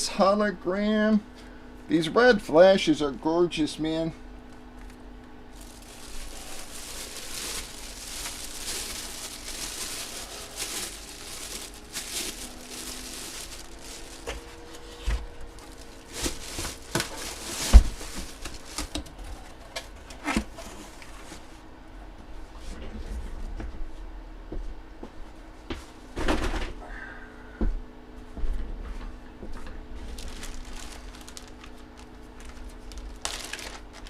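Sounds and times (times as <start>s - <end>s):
plastic and card crinkling: 5.6s - 19.5s, 30.0s - 34.0s.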